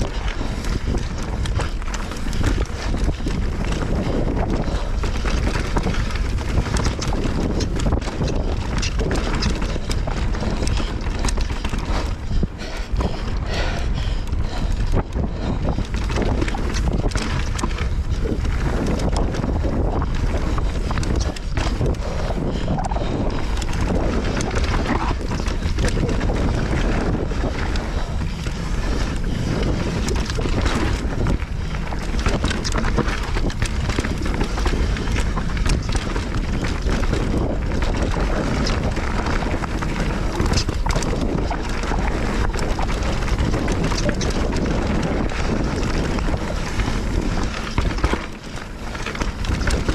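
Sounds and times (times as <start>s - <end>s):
bike clicking and rattling: 0.0s - 49.9s
tyres on dirt trail: 0.0s - 49.9s
wind rush on microphone: 0.0s - 49.9s.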